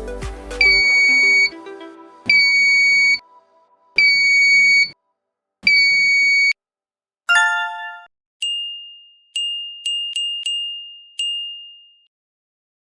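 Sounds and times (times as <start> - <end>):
buzzer high beep: 4.0 - 5.0, 5.7 - 6.6
bright dings: 7.3 - 12.1.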